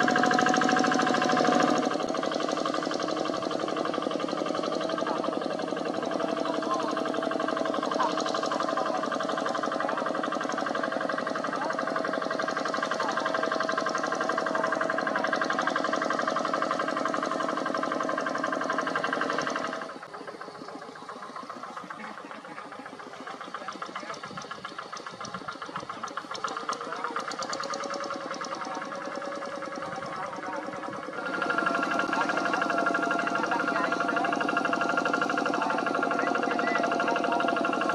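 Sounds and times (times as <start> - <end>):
diesel tractor engine running: 0.0 - 37.9.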